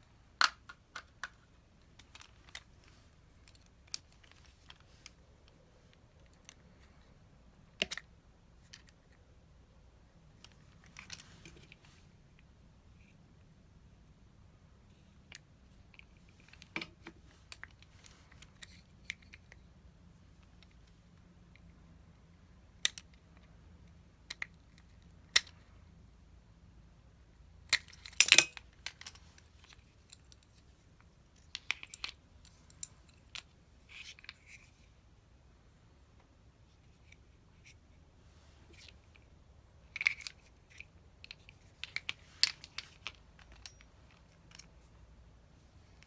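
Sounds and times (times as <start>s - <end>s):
hand tools clicking and tapping: 41.8s - 44.7s.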